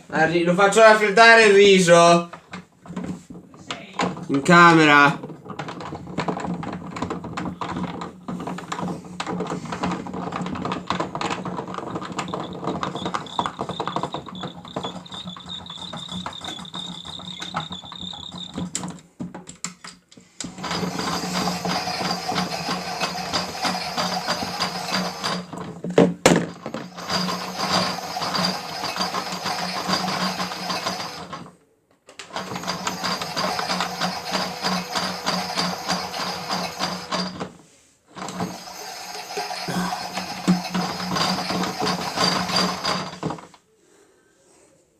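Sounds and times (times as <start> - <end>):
plastic rattling and clicking: 2.3 - 26.8
small electric motor hum: 38.5 - 40.7.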